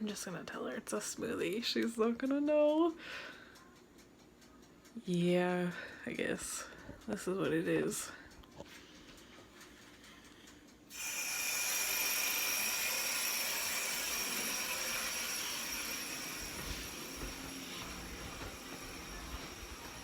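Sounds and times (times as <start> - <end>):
electric blender whine: 10.9 - 20.0.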